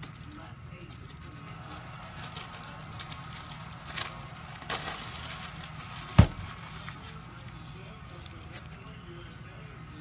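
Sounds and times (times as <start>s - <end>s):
cards and packaging crinkling: 0.0s - 9.2s
dull thump: 6.1s - 6.5s.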